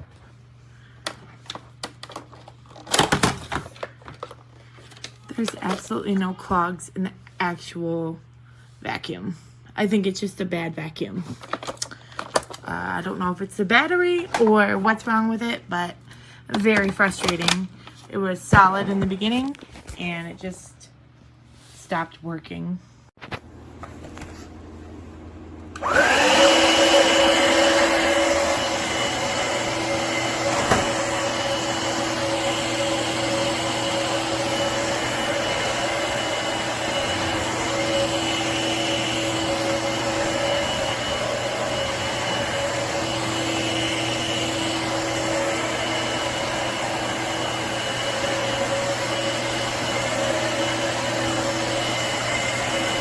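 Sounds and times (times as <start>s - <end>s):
vacuum motor whirring: 25.6s - 53.0s.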